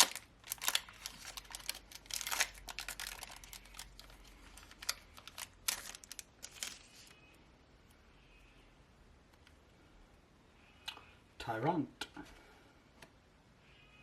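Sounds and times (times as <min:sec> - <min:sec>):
foil wrapper tearing and crinkling: 0:00.0 - 0:07.2.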